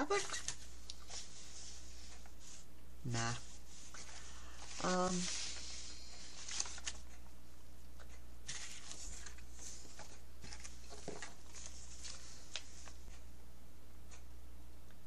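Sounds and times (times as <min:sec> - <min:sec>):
paper and fabric rustling: 0:00.0 - 0:02.6, 0:03.6 - 0:07.2, 0:08.4 - 0:13.1
steady low hum: 0:00.0 - 0:15.0.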